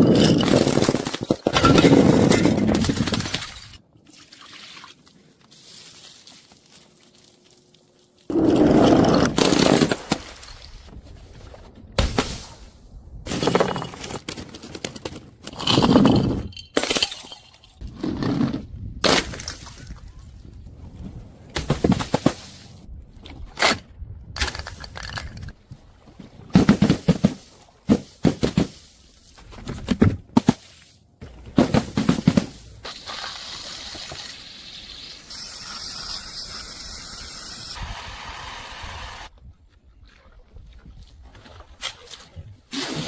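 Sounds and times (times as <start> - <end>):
crushing and breaking crunches: 0.0 - 3.8, 5.1 - 12.6.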